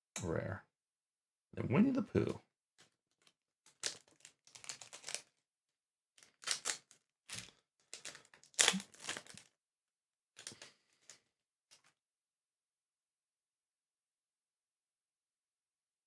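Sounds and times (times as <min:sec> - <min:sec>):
trading cards rustling and snapping: 0:02.8 - 0:05.4, 0:06.2 - 0:09.5, 0:10.4 - 0:11.2.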